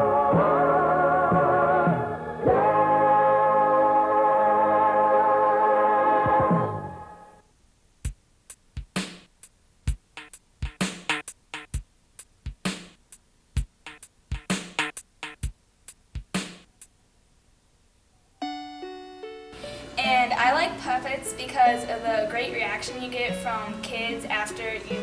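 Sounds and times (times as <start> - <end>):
organ-like chord: 0.0 - 7.4, 18.4 - 20.2
drum beat kick and snare: 8.0 - 17.0
keyboard note: 18.4 - 19.8.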